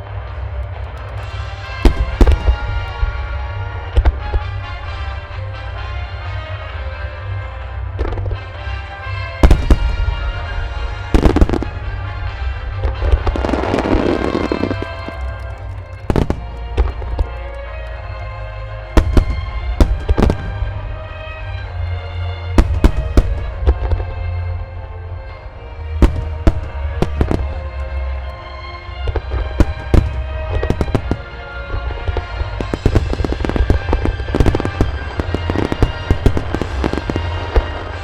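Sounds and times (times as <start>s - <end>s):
music playing: 0.0s - 38.0s
firework shells bursting: 1.0s - 3.4s, 12.9s - 17.9s, 18.9s - 20.8s, 22.6s - 24.0s, 26.0s - 28.3s.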